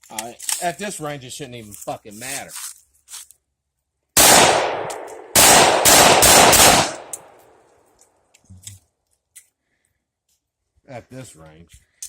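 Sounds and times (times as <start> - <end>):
gunshots with echo: 4.2 - 7.4.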